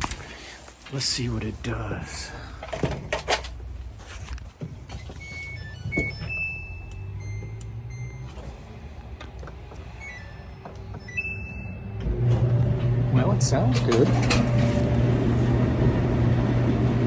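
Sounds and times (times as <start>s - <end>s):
dryer motor humming: 4.6s - 17.0s
electronic beeps: 5.0s - 8.4s.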